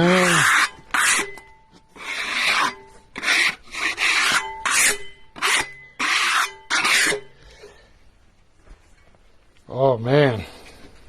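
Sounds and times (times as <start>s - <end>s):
rasping strokes across wood: 0.0s - 7.4s.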